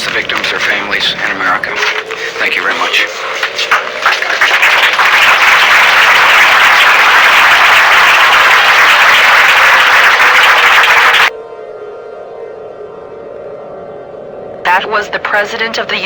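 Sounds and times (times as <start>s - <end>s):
audience applauding: 0.0s - 11.3s.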